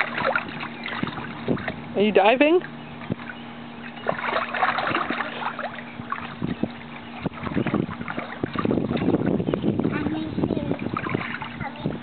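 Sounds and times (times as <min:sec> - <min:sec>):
steady low hum: 0:00.0 - 0:12.0
water splashing in a pool: 0:00.0 - 0:12.0.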